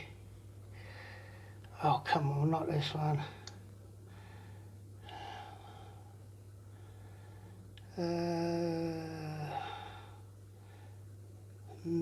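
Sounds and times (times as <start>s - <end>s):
man humming: 7.9s - 9.7s, 11.8s - 12.0s.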